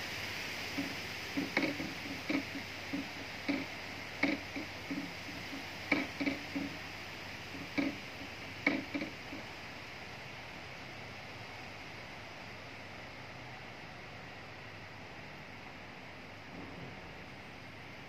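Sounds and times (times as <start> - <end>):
wind rustling tree leaves: 0.0 - 18.0
irregular knocks: 0.7 - 6.8, 7.5 - 9.5.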